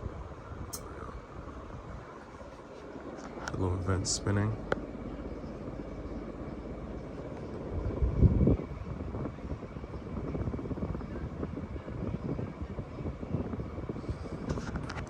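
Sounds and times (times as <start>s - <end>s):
ceiling fan running: 0.0s - 15.0s.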